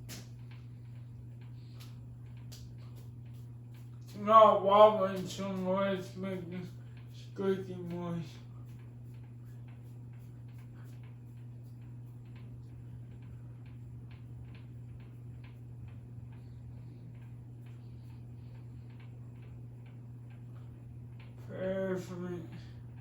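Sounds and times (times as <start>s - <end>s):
ceiling fan motor hum: 0.0s - 23.0s
fan ticking squeak: 0.0s - 23.0s.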